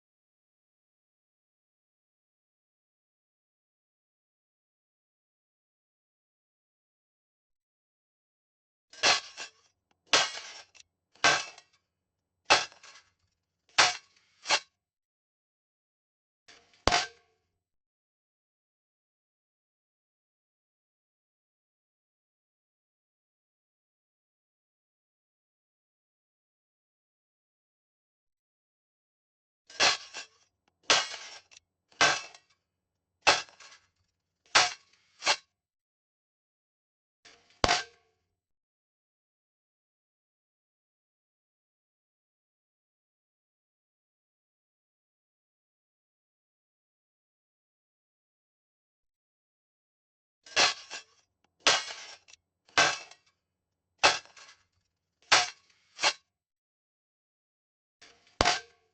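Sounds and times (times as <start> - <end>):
shovel digging: 9.0 - 11.7, 12.5 - 13.1, 13.8 - 14.8, 16.6 - 17.2, 29.7 - 32.5, 33.3 - 33.8, 34.5 - 35.5, 37.3 - 38.0, 50.5 - 53.2, 54.0 - 54.6, 55.3 - 56.3, 58.0 - 58.8.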